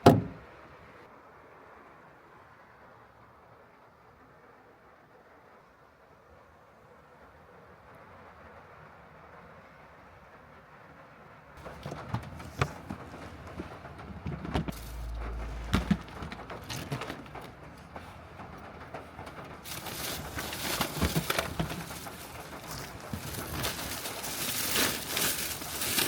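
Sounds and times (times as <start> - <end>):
rain tapping on van roof: 11.6 - 26.0
low rumble: 14.3 - 17.5.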